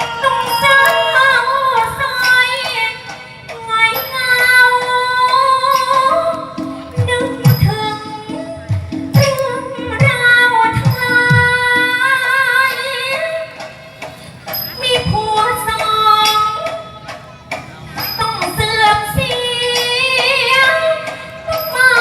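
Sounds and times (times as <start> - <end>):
backing music: 0.0 - 12.1
woman singing: 0.0 - 13.6, 14.8 - 16.9, 18.2 - 22.0.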